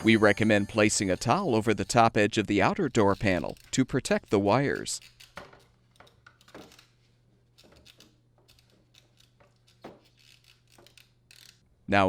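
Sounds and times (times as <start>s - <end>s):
soft handling clicks and knocks: 3.2s - 11.6s.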